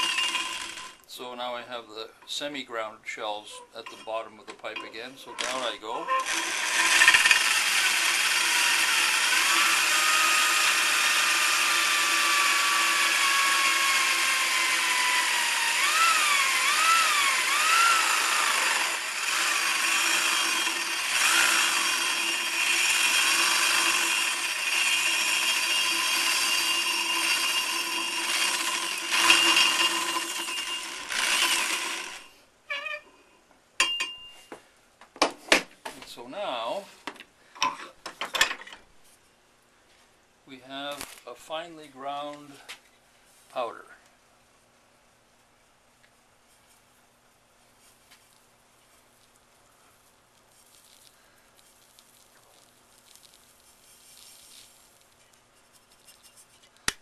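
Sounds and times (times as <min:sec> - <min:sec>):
electric drill grinding eggshells: 0:00.0 - 0:01.1, 0:05.4 - 0:32.4.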